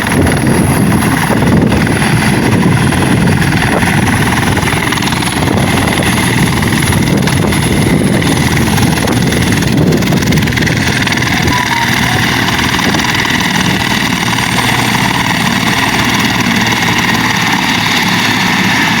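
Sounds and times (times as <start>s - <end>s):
helicopter rotor and engine: 0.0s - 19.0s
high whine: 11.1s - 13.7s.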